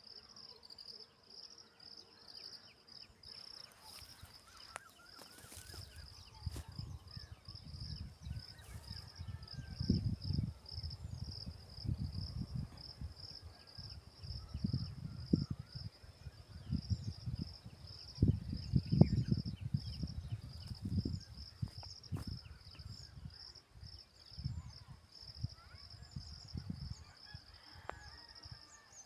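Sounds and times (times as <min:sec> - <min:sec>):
insect chirping: 0:03.2 - 0:26.9.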